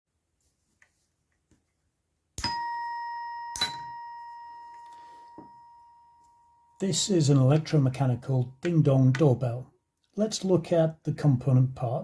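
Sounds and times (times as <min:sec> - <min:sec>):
ding-dong doorbell chime: 0:02.4 - 0:06.8.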